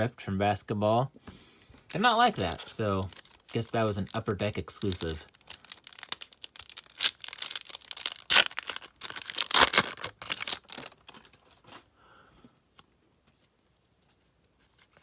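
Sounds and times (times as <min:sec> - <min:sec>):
wrapper tearing and crinkling: 0:01.9 - 0:11.8.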